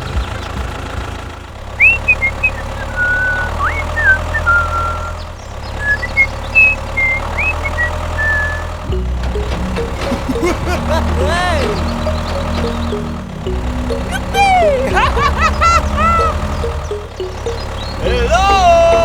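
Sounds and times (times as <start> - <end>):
tractor engine humming: 0.0 - 19.0
high chirping whistles: 1.8 - 8.8.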